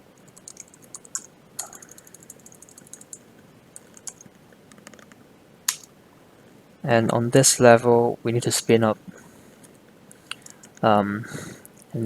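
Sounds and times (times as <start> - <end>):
typing on computer keyboard: 0.2 - 3.2, 3.8 - 5.9, 10.3 - 10.8.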